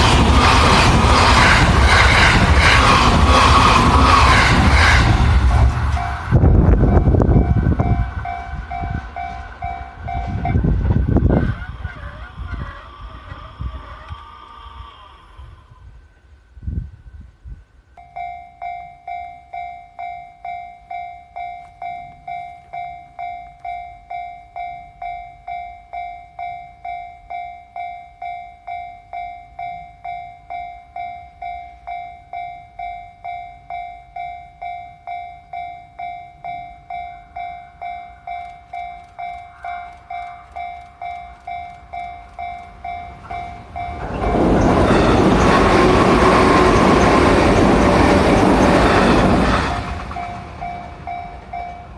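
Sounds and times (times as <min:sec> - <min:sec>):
train passing: 0:00.0 - 0:51.9
level crossing alarm ringing: 0:03.3 - 0:10.8, 0:18.0 - 0:51.9.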